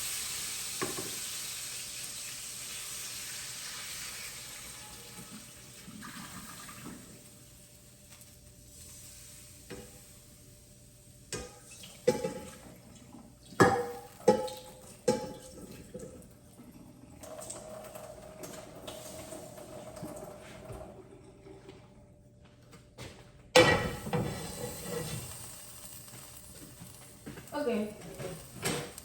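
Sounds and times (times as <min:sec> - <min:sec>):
water running: 0:01.8 - 0:07.5, 0:11.4 - 0:22.0, 0:23.7 - 0:29.0
pan and utensils knocking: 0:11.3 - 0:12.6, 0:13.6 - 0:16.2, 0:23.6 - 0:25.4, 0:28.0 - 0:29.0.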